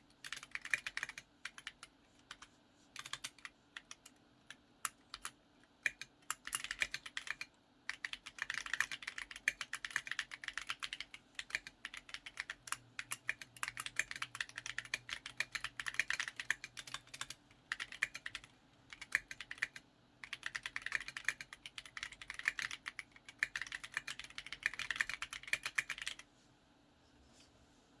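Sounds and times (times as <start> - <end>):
mechanical keyboard typing: 0.1 - 26.3.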